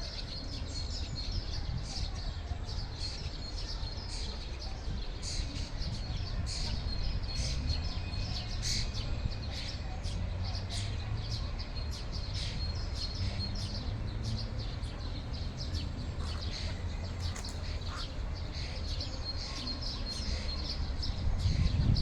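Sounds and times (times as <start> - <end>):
ducklings peeping: 15.2 - 18.7.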